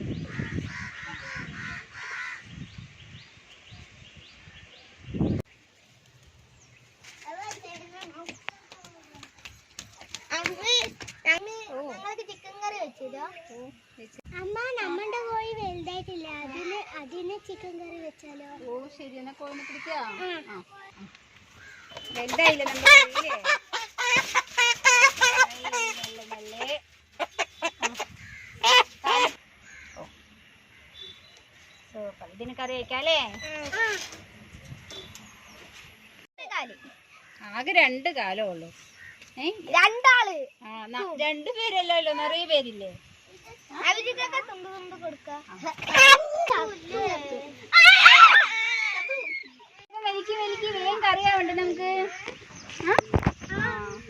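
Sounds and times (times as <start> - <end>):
harsh bird calls: 0.0 - 5.4, 21.5 - 32.0
small birds chirping: 0.0 - 47.7
chicken squawking and clucking: 22.3 - 29.4, 45.8 - 46.6.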